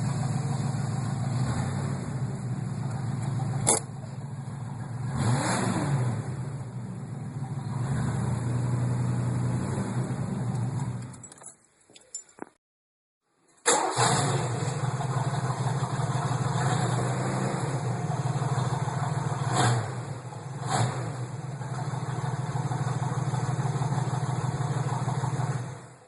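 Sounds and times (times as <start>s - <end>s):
unmuffled car engine idling: 0.0s - 5.2s, 6.2s - 7.8s, 21.2s - 26.0s
engine revving surges: 0.0s - 11.0s, 13.7s - 26.0s.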